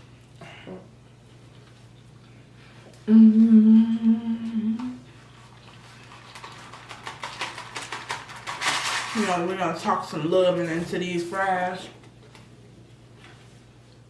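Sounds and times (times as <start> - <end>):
woman humming while eating: 3.0 - 5.1.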